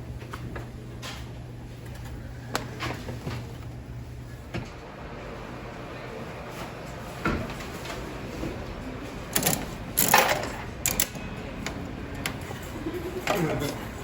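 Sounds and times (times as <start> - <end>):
hands working a vending machine: 9.2 - 14.0.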